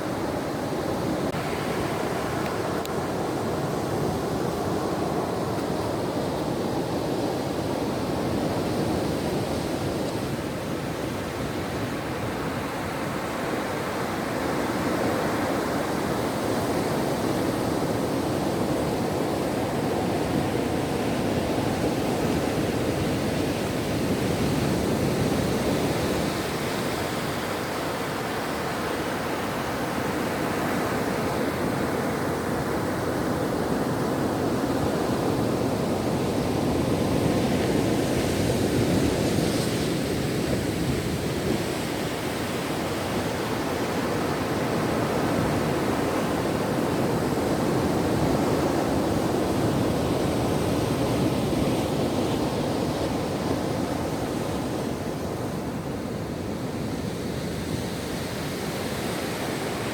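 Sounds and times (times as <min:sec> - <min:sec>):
ocean waves washing on shore: 0:00.0 - 0:59.9.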